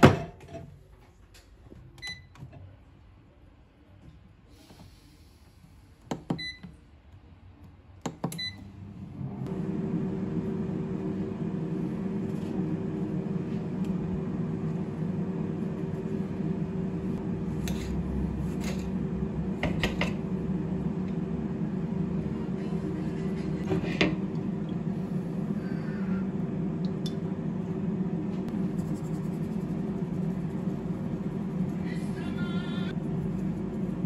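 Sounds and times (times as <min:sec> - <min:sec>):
microwave oven humming: 0:08.1 - 0:34.0.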